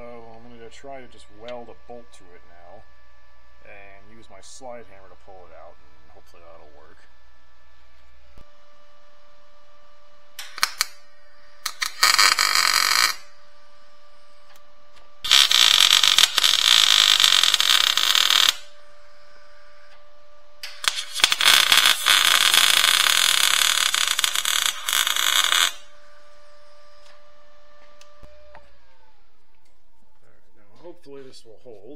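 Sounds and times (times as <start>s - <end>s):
faint hum: 0.0s - 31.9s
arc welder crackling: 10.2s - 28.8s.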